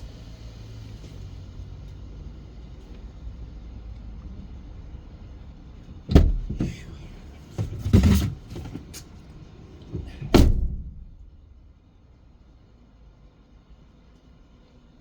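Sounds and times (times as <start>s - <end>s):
handling clunks and knocks: 6.0s - 11.2s
car door slam: 6.1s - 8.9s, 9.9s - 11.3s
low rumble: 9.5s - 12.4s.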